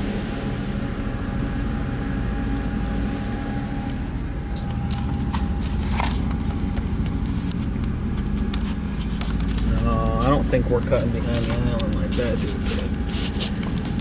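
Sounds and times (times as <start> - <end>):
boat engine droning: 0.0 - 14.0
sharp clicks and rattles: 3.8 - 14.0.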